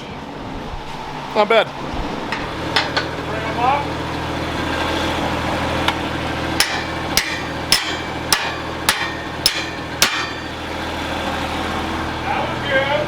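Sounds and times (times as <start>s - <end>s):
diesel engine idling: 0.0s - 13.0s
hammer striking metal: 6.6s - 10.6s.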